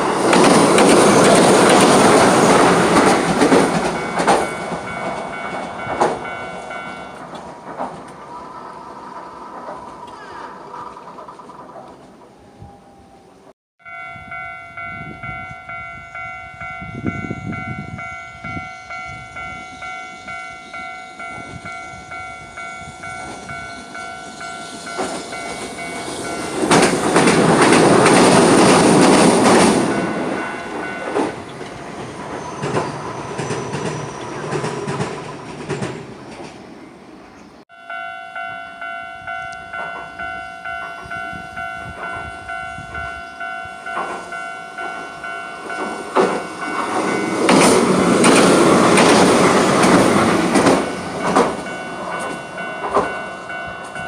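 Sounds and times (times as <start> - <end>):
level-crossing warning bell: 0.0 - 10.3, 13.8 - 35.2, 37.7 - 54.0
train passing: 0.0 - 54.0.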